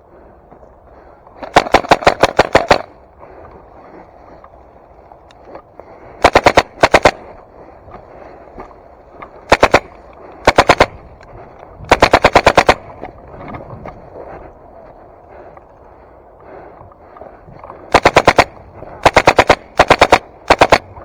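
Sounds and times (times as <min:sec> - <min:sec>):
airsoft rifle firing bursts: 0:01.4 - 0:03.0, 0:06.2 - 0:07.4, 0:09.4 - 0:11.2, 0:11.8 - 0:13.1, 0:17.9 - 0:21.0.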